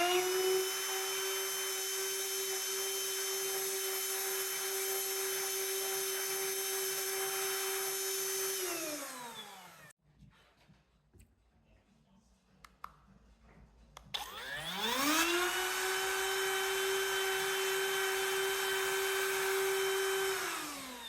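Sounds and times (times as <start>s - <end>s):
router motor whining: 0.0s - 9.9s, 14.2s - 21.0s.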